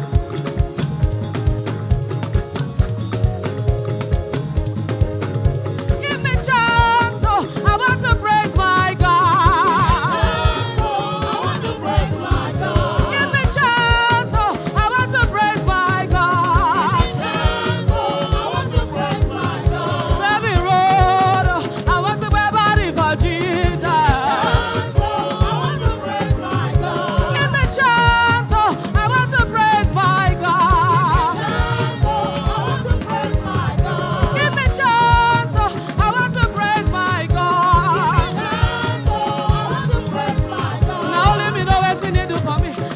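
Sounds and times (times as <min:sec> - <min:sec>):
band playing driving beat: 0:00.0 - 0:42.9
gospel choir singing: 0:00.0 - 0:42.9.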